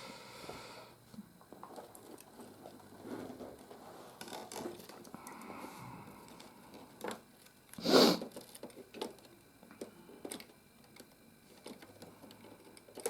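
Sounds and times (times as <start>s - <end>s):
scraping rustle: 1.7s - 5.0s.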